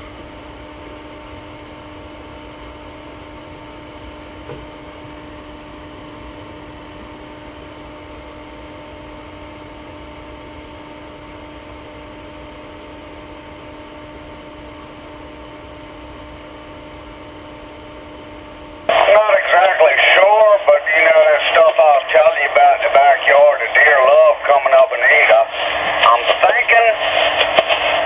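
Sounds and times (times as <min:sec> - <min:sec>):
low hiss and rumble: 0:18.4 - 0:28.0.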